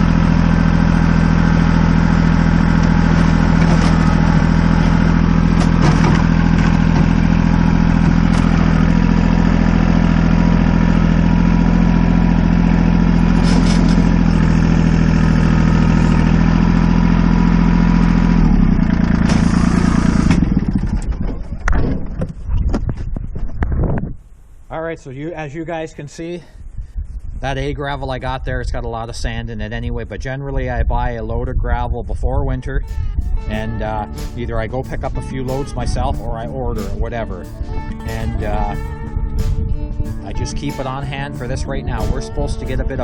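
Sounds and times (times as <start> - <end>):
loader clanks: 0.0 - 22.9, 32.9 - 43.0
tractor engine running: 0.0 - 24.6, 32.1 - 43.0.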